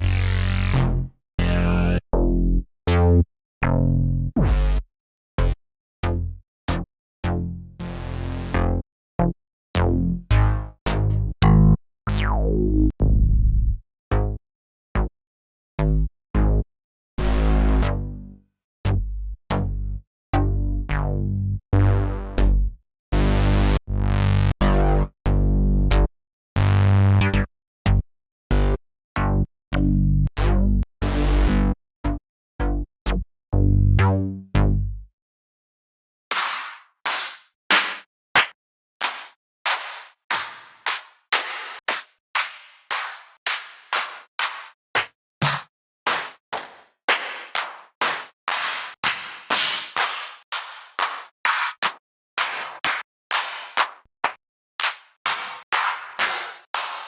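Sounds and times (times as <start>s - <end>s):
drum machine hits: 44.4s - 46.3s.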